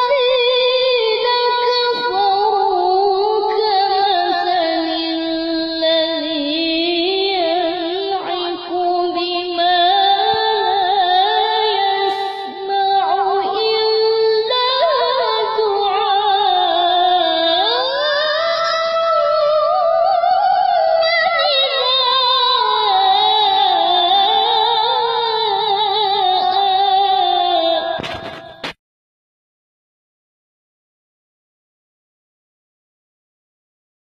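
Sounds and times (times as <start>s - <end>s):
high singing voice: 0.0s - 28.7s
short crackle: 28.0s - 28.8s.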